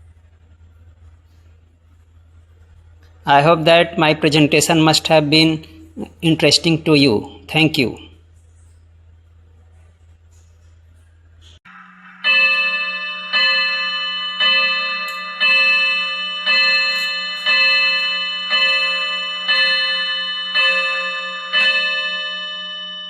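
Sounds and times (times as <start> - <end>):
wall clock striking on gong: 11.7 - 23.0.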